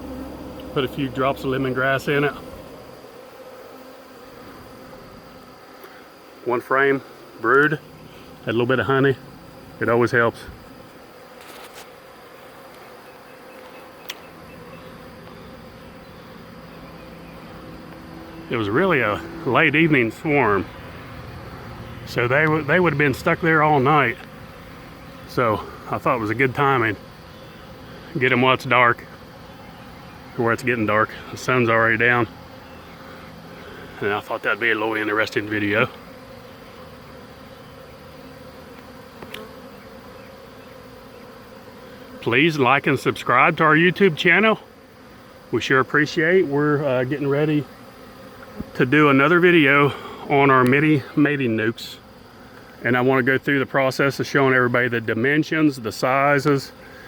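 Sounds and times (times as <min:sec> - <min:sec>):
bees buzzing: 0:00.0 - 0:57.0
faint click: 0:13.6 - 0:14.3
sharp click: 0:14.0 - 0:14.3.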